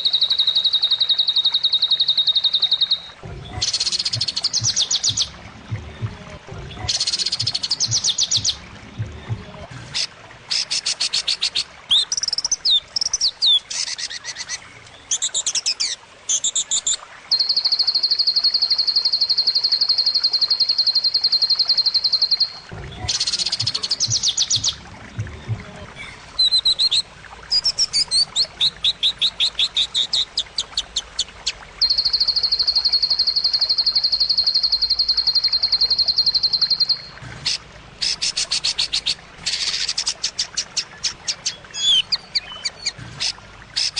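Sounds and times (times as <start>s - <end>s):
bird whistles and chattering: 31.8s - 43.9s.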